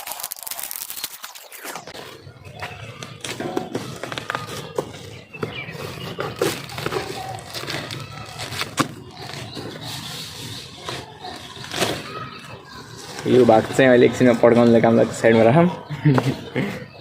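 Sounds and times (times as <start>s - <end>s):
packaging rustling and crinkling: 0.0s - 12.3s.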